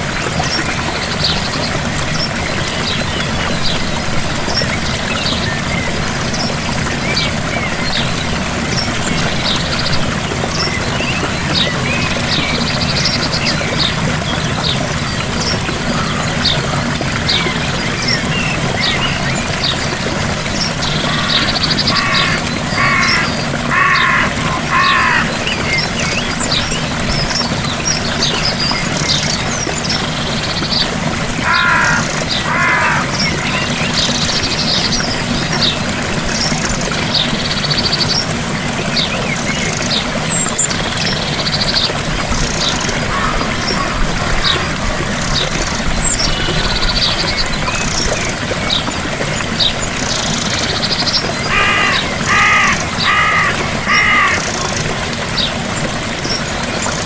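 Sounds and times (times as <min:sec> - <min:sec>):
gentle waterfall: 0:00.0 - 0:57.0
birds chirping: 0:00.2 - 0:56.9
low bird calls: 0:10.6 - 0:26.8, 0:31.4 - 0:35.0, 0:51.0 - 0:55.0.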